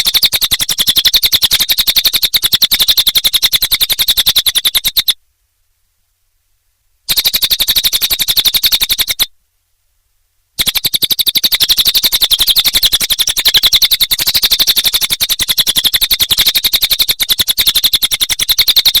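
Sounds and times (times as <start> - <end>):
bird chattering trill: 0.0 - 5.2, 7.1 - 9.3, 10.6 - 19.0.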